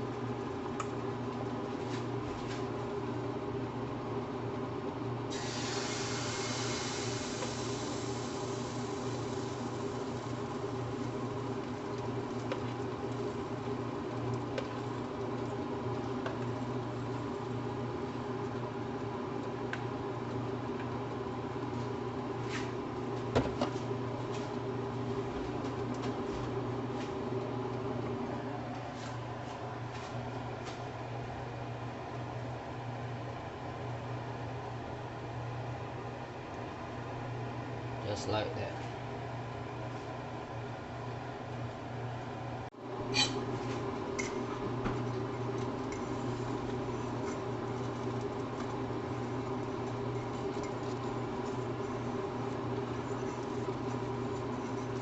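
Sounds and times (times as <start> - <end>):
kitchen hum: 0.0 - 55.0
pancakes sizzling in a pan: 5.3 - 11.5.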